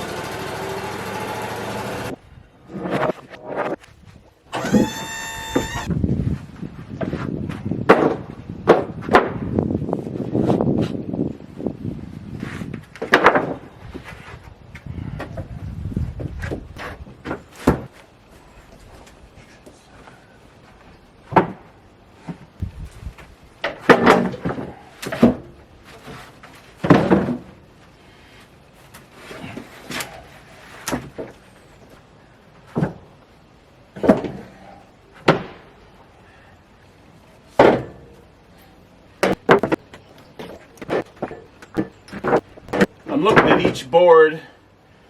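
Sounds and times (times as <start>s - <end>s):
wooden boards knocking together: 7.9s - 9.5s, 13.0s - 13.6s, 23.6s - 25.5s, 26.8s - 27.5s, 39.2s - 43.8s.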